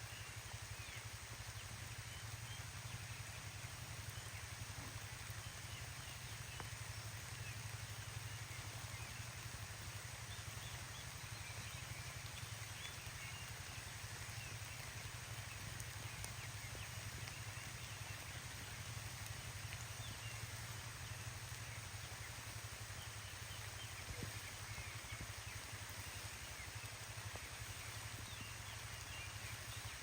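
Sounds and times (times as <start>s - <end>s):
light rain on grass: 0.0s - 30.0s.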